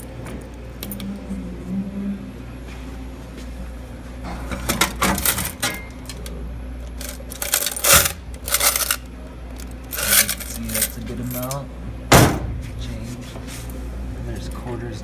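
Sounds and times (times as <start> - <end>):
coins clinking and rattling: 4.6 - 6.3, 6.9 - 11.6.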